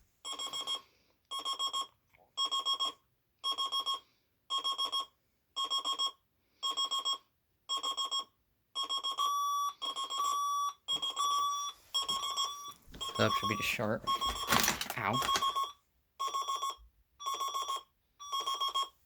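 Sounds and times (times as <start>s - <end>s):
alarm clock beeping: 0.3s - 19.0s
second alarm clock tone: 4.6s - 18.9s.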